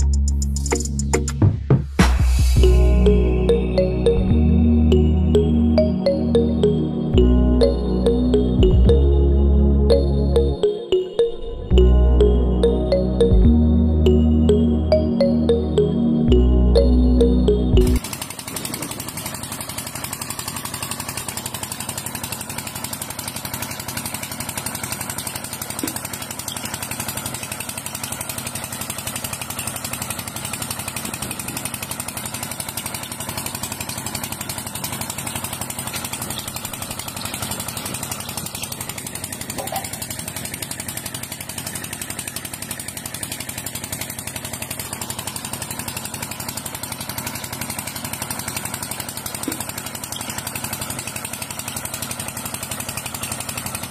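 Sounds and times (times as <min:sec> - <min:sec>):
small motor buzzing: 0:18.0 - 0:53.9.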